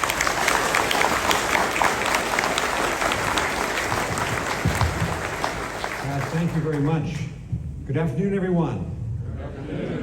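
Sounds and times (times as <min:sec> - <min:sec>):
audience applauding: 0:00.0 - 0:07.3.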